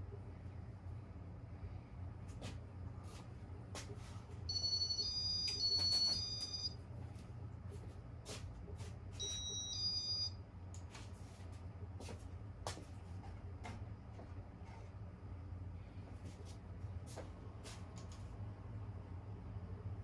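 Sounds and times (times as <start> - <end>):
ceiling fan low hum: 0.0 - 20.0
high two-tone beeps: 4.5 - 6.7, 9.2 - 10.3.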